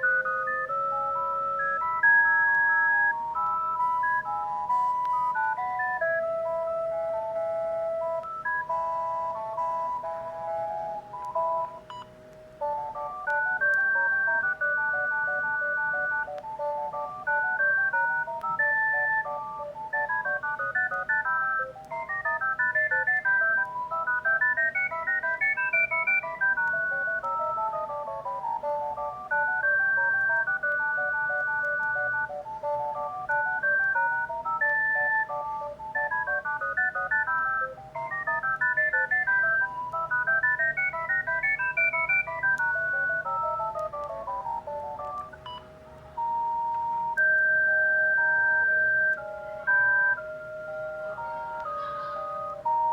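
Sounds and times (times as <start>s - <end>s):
polyphonic phone ringtone: 0.0s - 52.9s.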